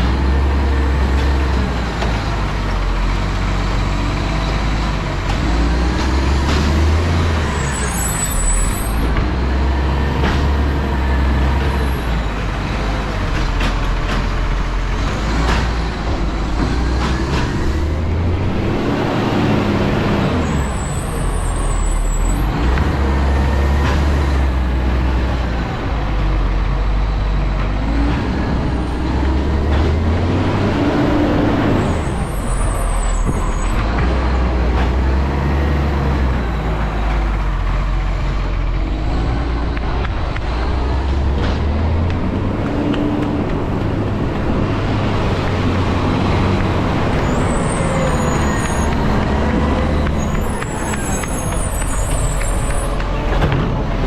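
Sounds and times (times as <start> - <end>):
diesel engine running loud: 0.0 - 54.0
high squeaks: 7.4 - 9.1, 31.8 - 33.8, 47.1 - 49.2, 49.8 - 53.4.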